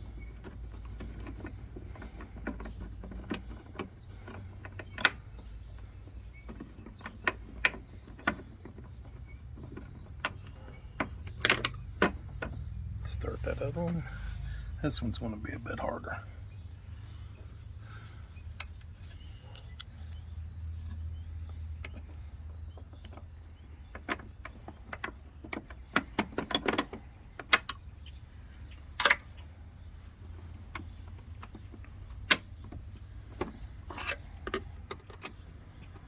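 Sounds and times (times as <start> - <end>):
low steady hum: 0.0 - 36.0
metallic clicks and knocks: 0.3 - 14.0, 28.9 - 29.5, 30.5 - 36.0.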